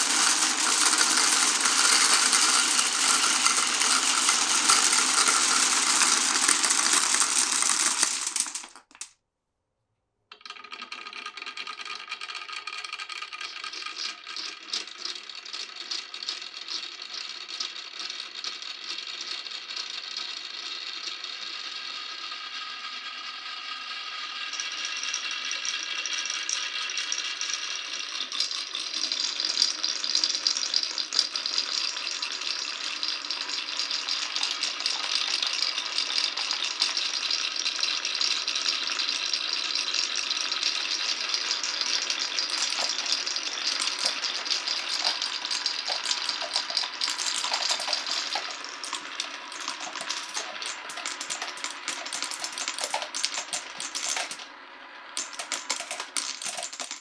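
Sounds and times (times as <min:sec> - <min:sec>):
marbles rattling through wooden run: 0:00.0 - 0:09.1, 0:27.6 - 0:57.0.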